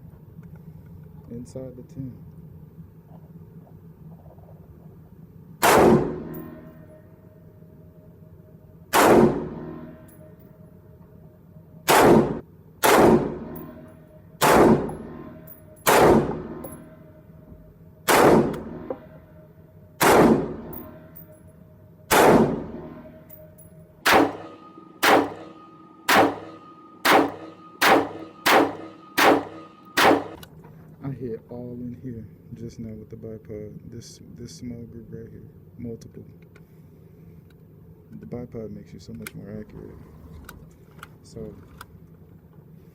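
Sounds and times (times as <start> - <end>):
rifle shots with echo: 5.6 - 6.6, 8.9 - 9.9, 11.9 - 13.8, 14.4 - 16.8, 18.1 - 19.2, 20.0 - 21.0, 22.1 - 23.2, 24.0 - 30.4.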